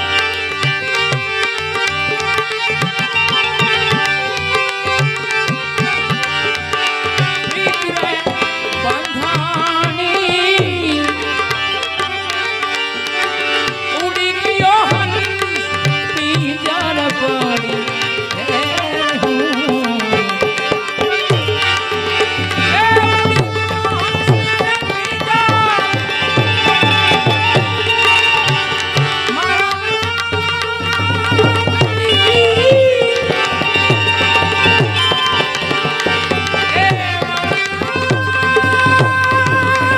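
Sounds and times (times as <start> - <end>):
tabla rhythm: 0.0 - 39.9
gliding melody line: 15.3 - 39.9.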